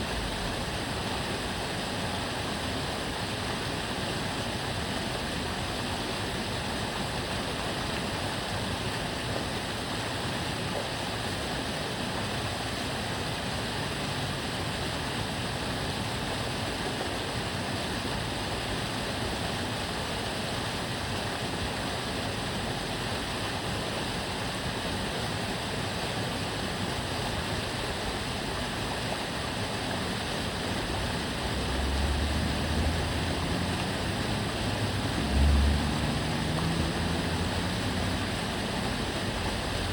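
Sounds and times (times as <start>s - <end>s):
stream water flowing: 0.0s - 39.9s
low rumble of passing traffic: 29.8s - 39.9s.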